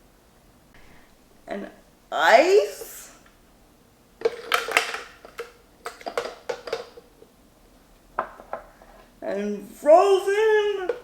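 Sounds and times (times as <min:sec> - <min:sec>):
ice cubes clattering into blender: 0:04.2 - 0:07.0.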